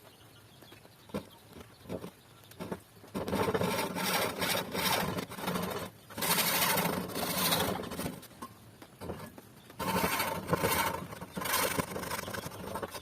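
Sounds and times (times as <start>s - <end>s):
hand saw rasping through wood: 3.2s - 8.2s, 9.8s - 13.0s.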